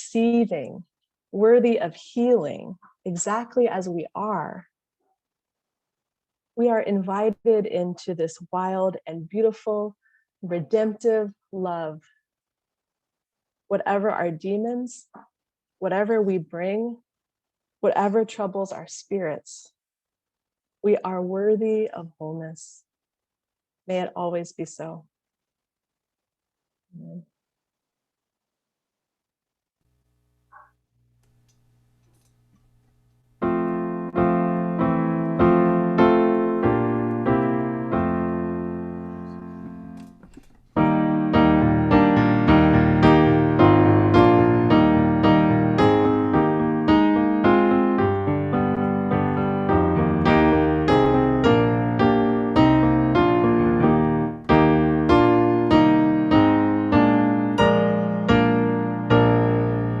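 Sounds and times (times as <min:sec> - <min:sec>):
solo piano: 0:33.4 - 1:00.0.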